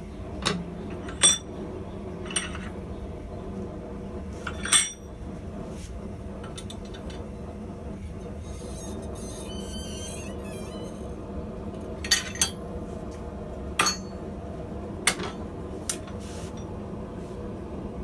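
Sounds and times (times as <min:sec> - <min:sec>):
steady low hum: 0:01.6 - 0:15.8.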